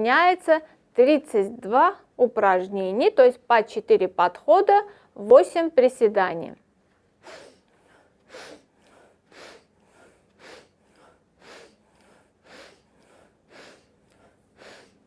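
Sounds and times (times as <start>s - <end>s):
person sniffing through the nose: 7.2s - 15.0s
soft breath out: 7.2s - 15.0s.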